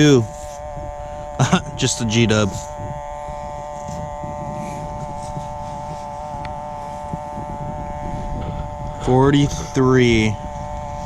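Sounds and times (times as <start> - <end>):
wind-like noise: 0.0 - 11.0.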